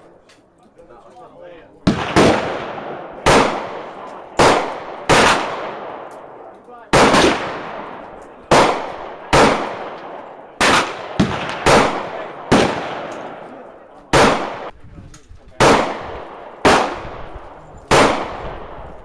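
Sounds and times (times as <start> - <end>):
pistol shots with echo: 1.8 - 14.7, 15.6 - 19.0.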